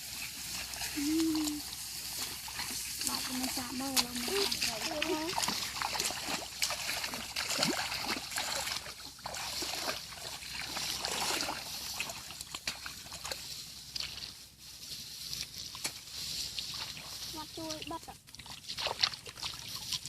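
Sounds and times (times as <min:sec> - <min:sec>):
shallow water splashing: 0:00.0 - 0:14.4, 0:15.4 - 0:20.0.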